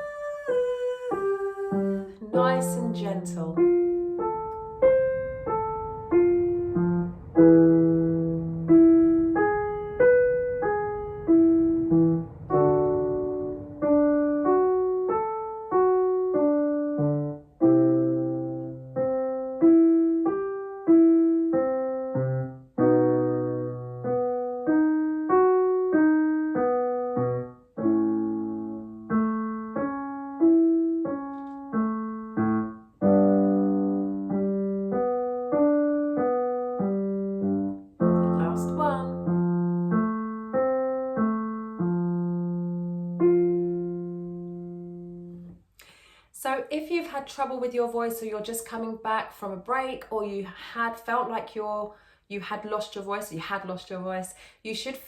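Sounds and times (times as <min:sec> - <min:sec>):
piano note patterns: 0:00.0 - 0:45.9.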